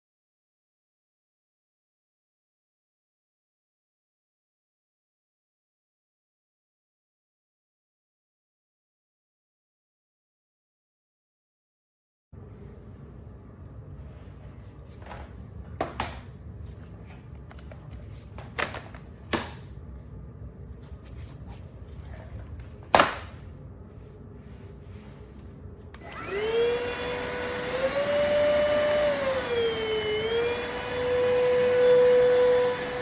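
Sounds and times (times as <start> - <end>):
stick vacuum motor whining: 25.9 - 33.0.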